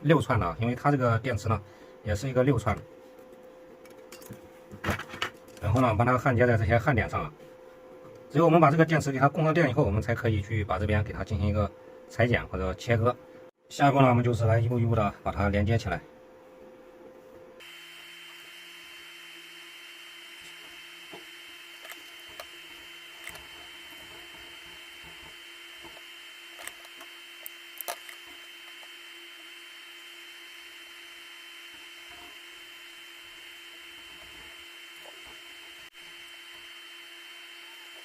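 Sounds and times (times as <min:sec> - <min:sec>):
faint electrical whine: 0:00.0 - 0:38.0.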